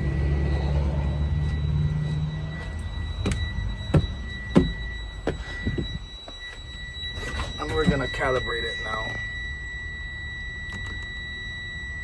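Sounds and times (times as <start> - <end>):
sharp knocks and clunks: 3.2 - 6.0.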